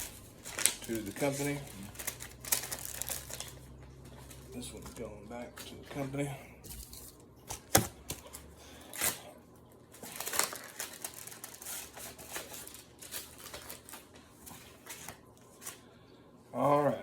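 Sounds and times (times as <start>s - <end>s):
trading cards clicking and rustling: 0.0s - 6.1s.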